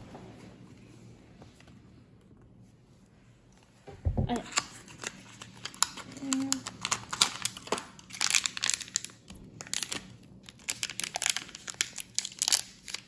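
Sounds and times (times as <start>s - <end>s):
wrapper crinkling and tearing: 4.3s - 13.0s.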